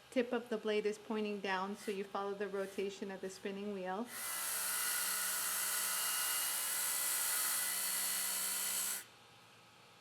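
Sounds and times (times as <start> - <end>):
bench sharpener motor whine: 4.1 - 9.1.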